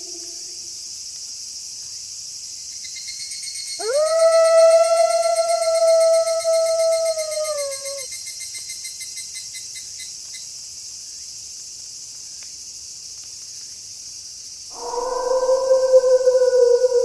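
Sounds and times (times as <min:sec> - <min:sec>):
crickets chirring: 0:00.0 - 0:17.0
pulsing insect trill: 0:02.8 - 0:09.2, 0:14.7 - 0:17.0
wolf howling: 0:03.8 - 0:08.0, 0:14.7 - 0:17.0.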